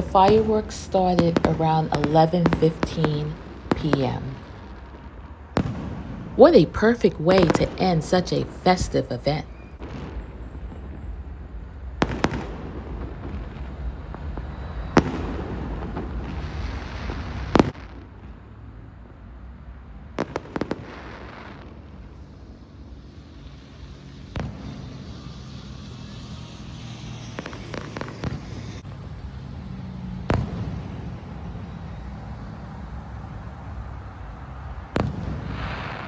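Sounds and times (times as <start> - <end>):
fireworks banging and crackling: 0.0 - 18.2, 23.5 - 28.8, 30.2 - 32.5, 34.2 - 36.0.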